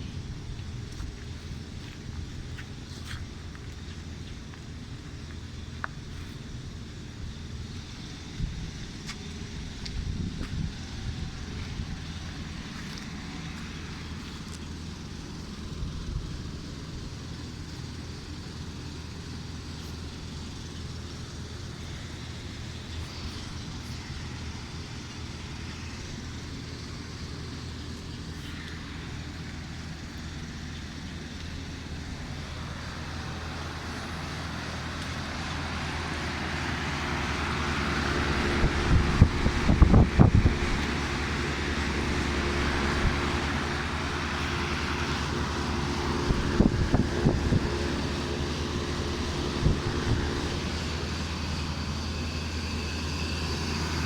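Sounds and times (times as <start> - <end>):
air conditioner units humming: 27.3 - 52.4.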